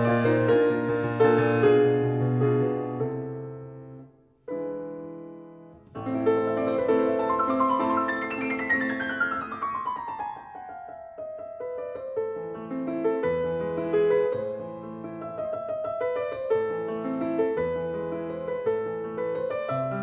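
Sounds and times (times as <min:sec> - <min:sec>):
piano music: 0:00.0 - 0:20.0.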